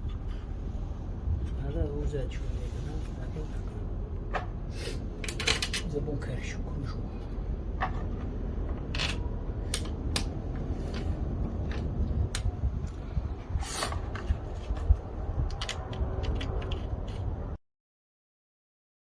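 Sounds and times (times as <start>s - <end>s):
steady low rumble: 0.0s - 17.6s
hands handling parts clicking: 5.2s - 5.9s, 7.8s - 13.0s, 13.8s - 17.4s.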